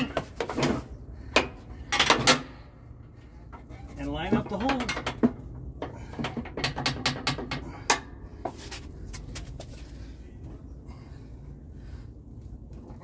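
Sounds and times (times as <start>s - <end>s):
metal parts clicking and knocking: 4.3s - 8.1s.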